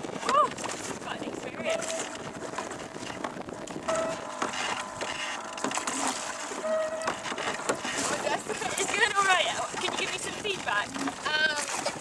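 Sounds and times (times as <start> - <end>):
oars creaking and knocking: 0.0 - 12.0
oar squeak: 1.6 - 2.3, 3.8 - 11.9.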